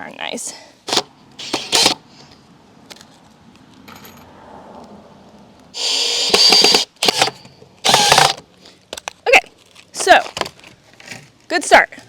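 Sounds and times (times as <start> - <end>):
cordless drill driving screw: 0.9 - 2.0, 5.8 - 8.4.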